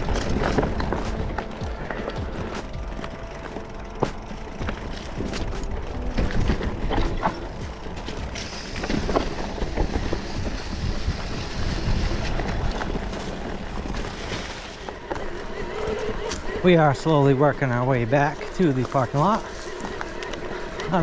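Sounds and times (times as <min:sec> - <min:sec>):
wind buffeting microphone: 0:00.0 - 0:14.5
bike rattling over bumps: 0:00.0 - 0:21.0
tyres rolling over dirt and rocks: 0:00.0 - 0:21.0.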